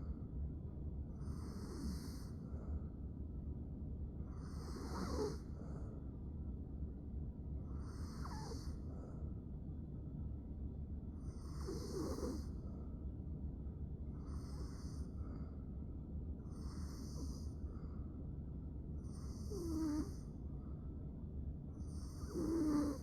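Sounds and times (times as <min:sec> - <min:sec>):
woman snoring: 0:01.3 - 0:02.3, 0:04.4 - 0:05.4, 0:07.9 - 0:08.7, 0:11.4 - 0:12.5, 0:16.6 - 0:17.4, 0:19.1 - 0:20.2, 0:21.9 - 0:23.0.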